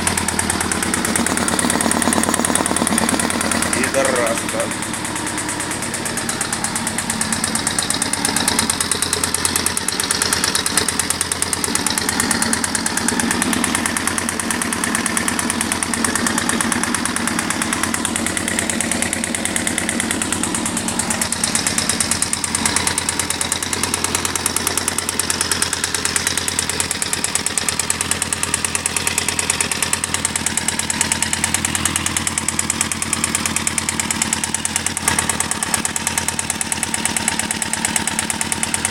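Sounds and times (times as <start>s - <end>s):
engine running: 0.0s - 38.9s
rapid regular engine knock: 0.0s - 38.9s.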